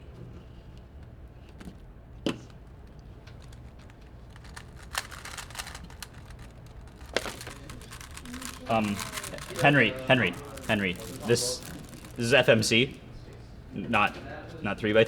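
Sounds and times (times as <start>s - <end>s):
puzzle cube plastic clicks: 3.2s - 12.3s.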